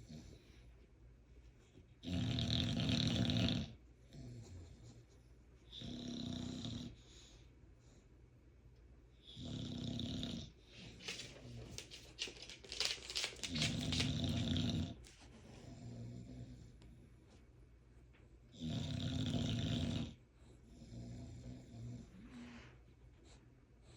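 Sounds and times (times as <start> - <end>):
dog snoring: 2.0 - 5.0, 5.7 - 7.3, 9.2 - 11.0, 13.6 - 17.0, 18.5 - 22.7
crackling rattle in breath: 10.7 - 15.3.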